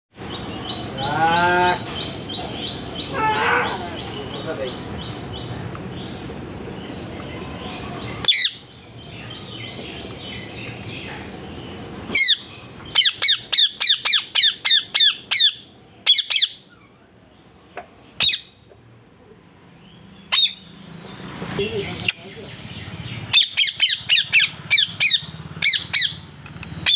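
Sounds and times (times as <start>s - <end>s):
parakeet screeching: 12.1s - 16.6s, 20.3s - 20.7s, 23.3s - 26.2s.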